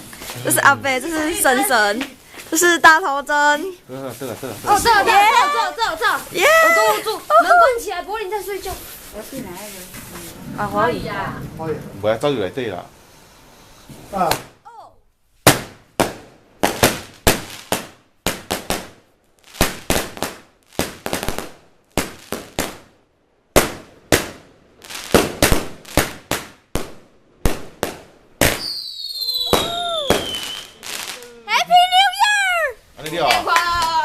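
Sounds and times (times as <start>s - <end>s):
fireworks bangs: 0.0s - 14.6s, 15.4s - 34.0s
firework whistling falling pitch: 28.5s - 31.3s.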